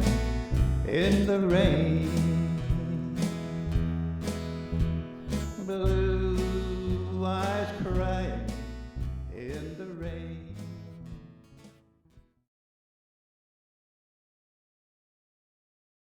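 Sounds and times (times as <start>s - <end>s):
bass notes: 0.0s - 11.7s
acoustic guitar chords: 0.0s - 12.3s.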